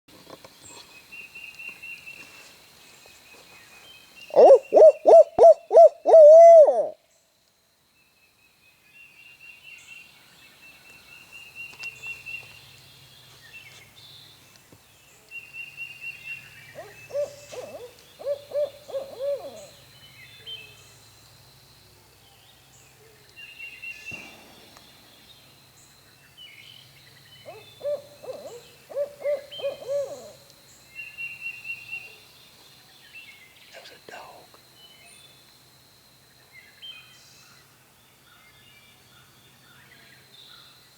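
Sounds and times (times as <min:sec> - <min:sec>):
small songbirds chirping: 0:00.4 - 0:40.9
owl hooting: 0:04.3 - 0:07.0, 0:16.7 - 0:19.8, 0:27.4 - 0:30.5.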